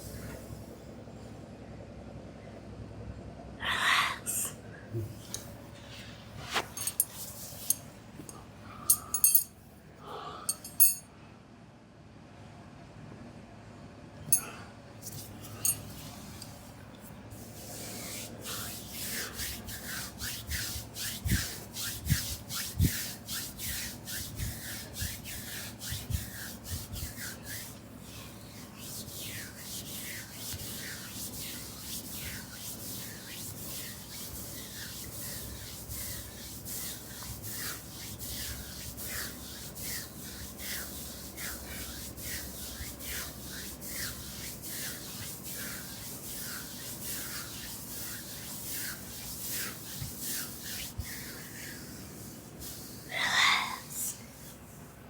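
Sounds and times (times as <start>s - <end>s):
hands rubbing oiled skin: 5.1s - 9.5s, 15.0s - 53.8s.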